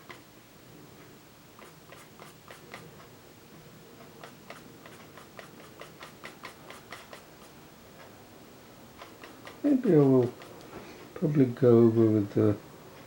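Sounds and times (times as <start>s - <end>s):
pastel pencil ticking on paper: 1.6s - 3.1s, 4.0s - 7.6s, 9.0s - 10.6s.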